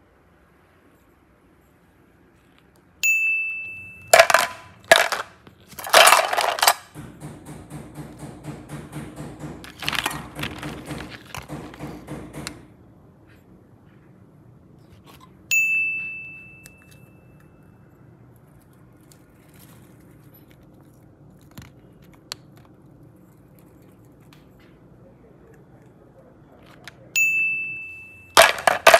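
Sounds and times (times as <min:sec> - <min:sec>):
bell-like ding: 0:03.0 - 0:04.1, 0:15.5 - 0:17.6, 0:27.2 - 0:28.4.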